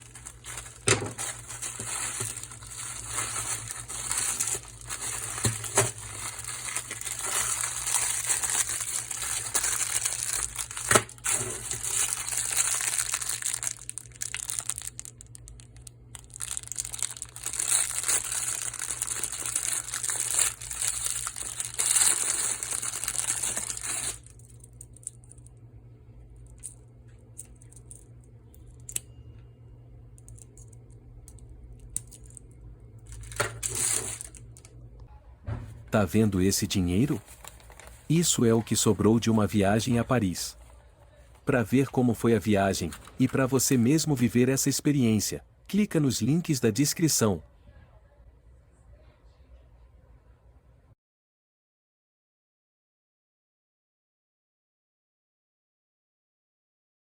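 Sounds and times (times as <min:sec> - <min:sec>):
plastic packaging crinkling and tearing: 0:00.0 - 0:25.1, 0:33.1 - 0:34.7, 0:36.6 - 0:40.4, 0:41.6 - 0:44.3.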